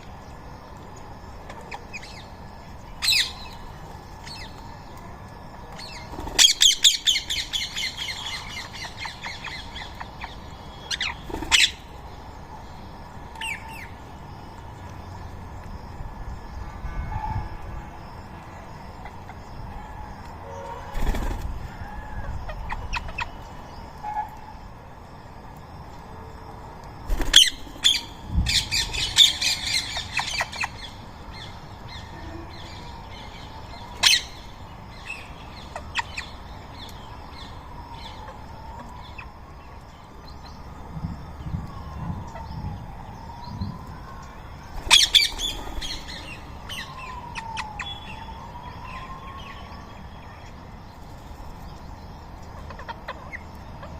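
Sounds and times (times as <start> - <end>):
parakeets squawking: 44.9 - 46.9.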